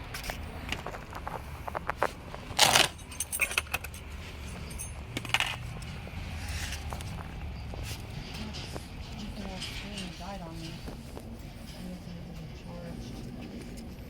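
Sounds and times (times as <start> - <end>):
metal parts rattling clatter: 2.5 - 6.9
light metallic clicks and clinks: 2.6 - 6.0.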